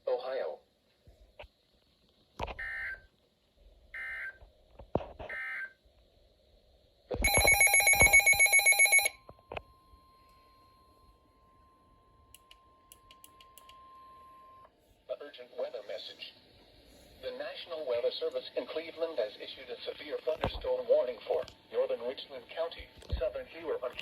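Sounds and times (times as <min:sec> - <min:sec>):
pulsing electronic alarm beep: 0:07.2 - 0:09.2
faint steady tone: 0:07.2 - 0:18.6.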